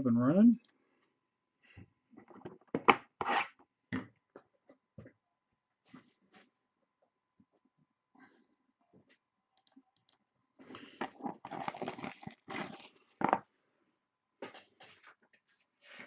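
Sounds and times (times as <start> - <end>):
rustling and crinkling: 10.9 - 13.5.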